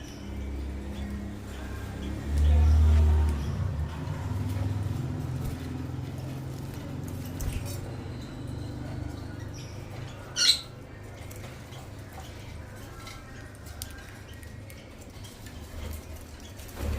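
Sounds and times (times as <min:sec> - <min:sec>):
lovebirds chirping: 0:00.0 - 0:16.9.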